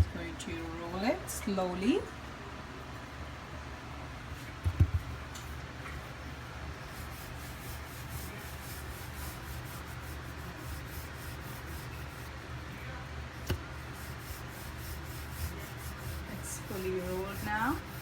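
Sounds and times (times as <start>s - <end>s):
rolling pin rubbing over dough: 6.3s - 18.0s.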